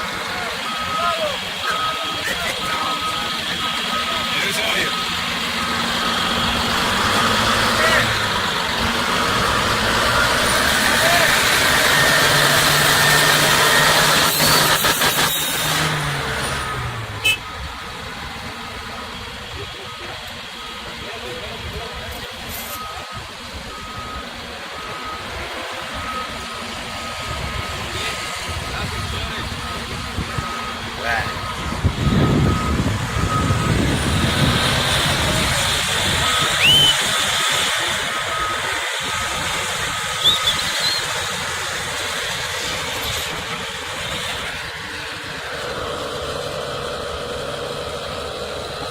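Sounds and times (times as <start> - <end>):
backup alarm beeping: 0.0 - 8.8, 22.7 - 41.6
diesel engine rumble: 0.0 - 48.9.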